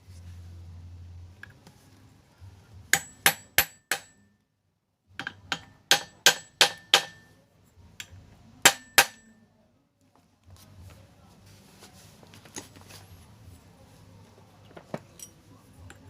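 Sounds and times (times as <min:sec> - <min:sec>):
hammer tapping metal: 0:02.9 - 0:04.3, 0:05.2 - 0:07.4, 0:08.0 - 0:09.4.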